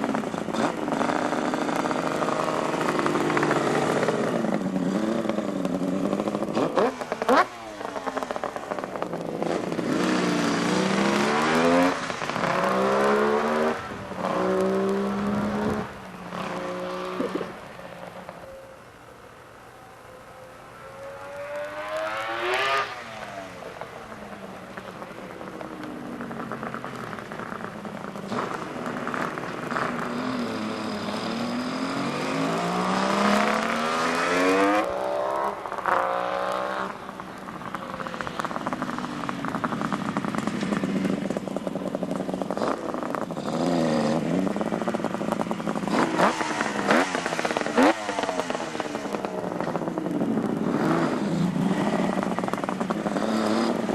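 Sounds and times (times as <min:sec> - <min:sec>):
two-stroke motorcycle engine revving: 0:00.0 - 0:17.5, 0:38.2 - 0:53.9.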